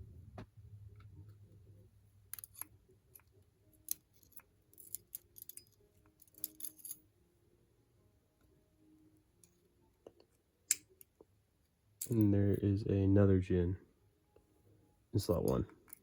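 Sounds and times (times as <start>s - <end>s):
small metallic clicks and taps: 2.3s - 7.0s.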